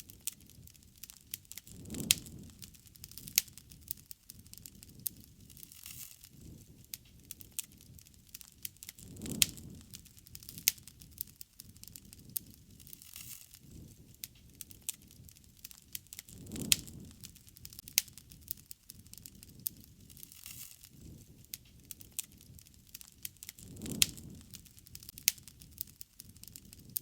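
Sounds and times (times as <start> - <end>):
rush of burning flames: 0.0 - 27.0
sharp pops and snaps: 0.0 - 27.0
wood fire crackling: 0.0 - 27.0.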